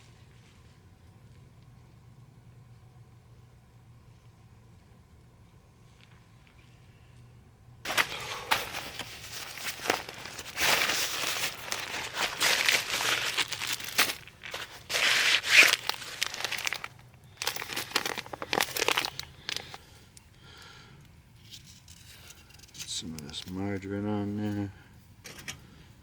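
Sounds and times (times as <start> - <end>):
wrapping being crinkled: 7.9 - 19.9.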